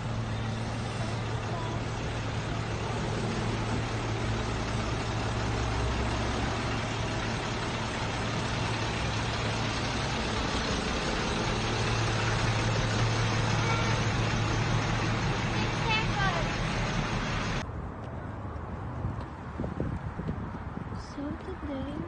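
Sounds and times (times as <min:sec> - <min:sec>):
even rushing noise: 0:00.0 - 0:17.6
vehicle engine hum: 0:00.0 - 0:22.0.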